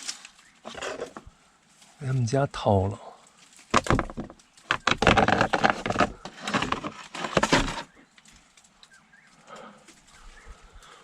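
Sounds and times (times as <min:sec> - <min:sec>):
rapid crackling and clattering: 0:03.3 - 0:09.0.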